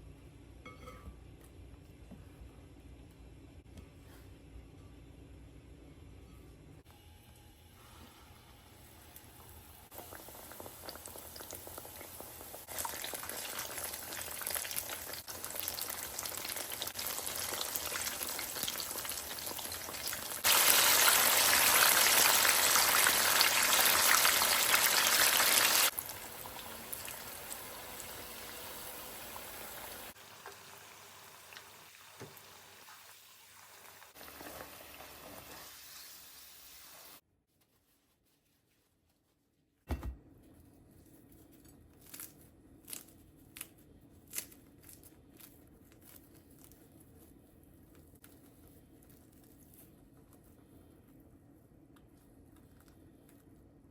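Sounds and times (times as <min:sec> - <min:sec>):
fritters sizzling in hot oil: 0:09.9 - 0:37.2.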